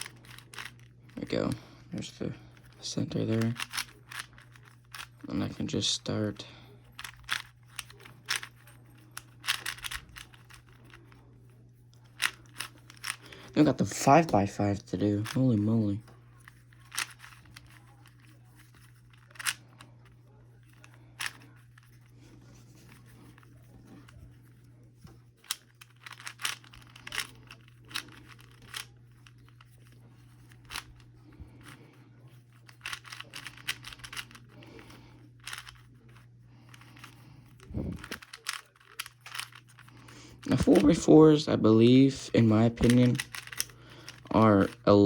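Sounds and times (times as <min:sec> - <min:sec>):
puzzle cube clicking and clacking: 0:00.0 - 0:11.2, 0:12.0 - 0:20.1, 0:20.7 - 0:22.1, 0:25.4 - 0:45.0
low hum: 0:00.0 - 0:45.0.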